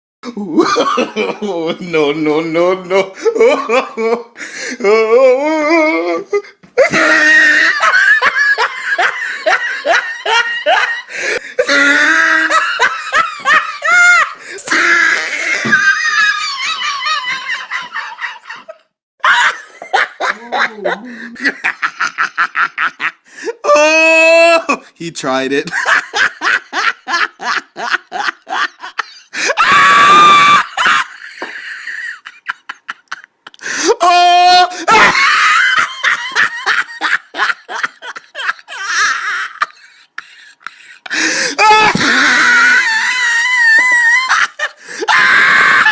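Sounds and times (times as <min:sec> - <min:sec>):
person laughing hard: 0:00.3 - 0:02.0, 0:03.0 - 0:24.8, 0:25.7 - 0:45.9
loud high scream: 0:29.4 - 0:31.1, 0:45.1 - 0:45.9.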